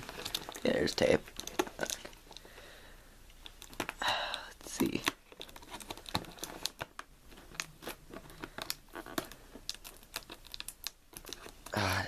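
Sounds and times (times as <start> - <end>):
cardboard box crinkling and tearing: 0.0 - 2.2, 4.7 - 12.0.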